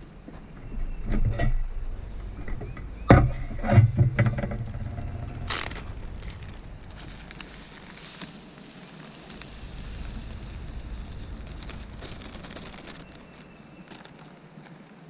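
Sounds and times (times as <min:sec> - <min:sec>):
wind rumble on microphone: 0:00.0 - 0:14.3
sharp knocks and clatters: 0:00.3 - 0:08.0
short hissing rush: 0:04.6 - 0:13.9.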